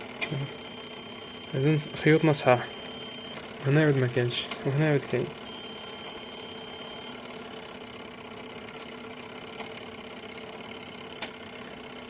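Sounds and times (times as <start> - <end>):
clicks: 0.2 - 0.6, 4.4 - 4.8
steady low hum: 0.2 - 7.6.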